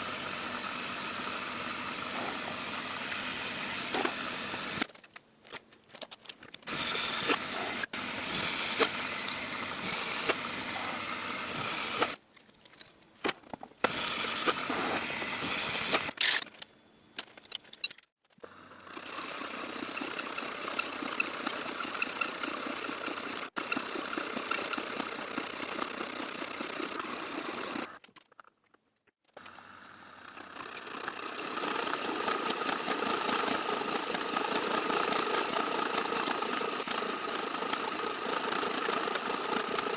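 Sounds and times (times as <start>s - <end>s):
milling machine cutting steel: 0.0s - 4.8s, 6.7s - 12.2s.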